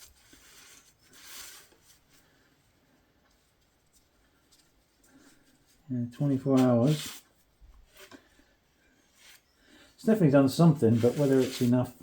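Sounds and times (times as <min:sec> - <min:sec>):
brief rubbing scrape: 0:00.0 - 0:02.0, 0:06.6 - 0:07.3, 0:10.7 - 0:12.0.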